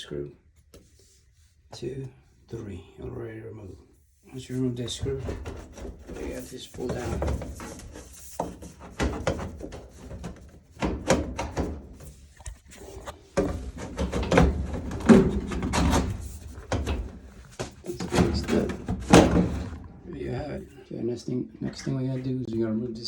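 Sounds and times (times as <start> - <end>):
sheet metal clunks and knocks: 5.0 - 12.1, 13.4 - 20.0.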